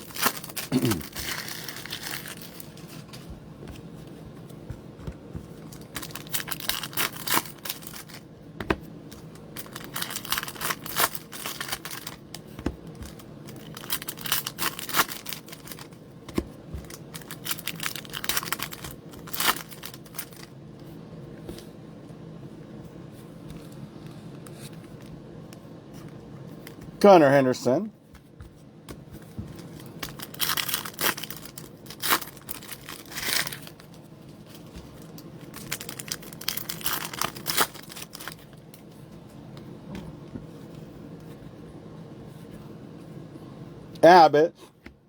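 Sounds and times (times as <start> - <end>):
foil wrappers tearing and crinkling: 0.0 - 3.1, 5.6 - 8.2, 9.1 - 16.0, 16.8 - 20.5, 29.6 - 38.5
faint steady hum: 0.0 - 45.0.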